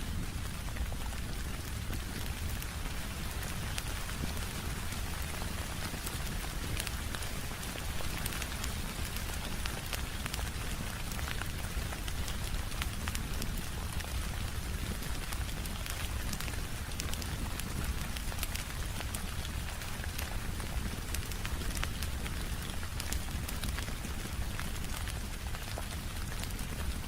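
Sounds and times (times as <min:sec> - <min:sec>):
steady rain falling: 0:00.0 - 0:27.0.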